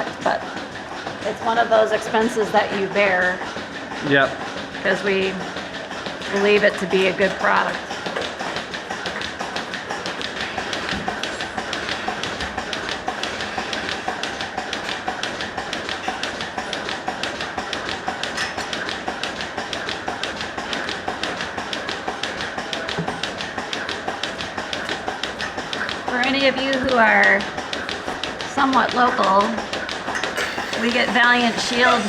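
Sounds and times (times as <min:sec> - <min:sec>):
milking machine pulsators clicking: 0:00.0 - 0:32.0
vacuum hiss: 0:30.4 - 0:32.0.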